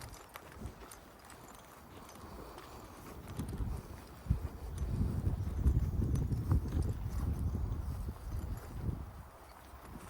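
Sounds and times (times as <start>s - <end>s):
walking footsteps: 0.0s - 10.0s.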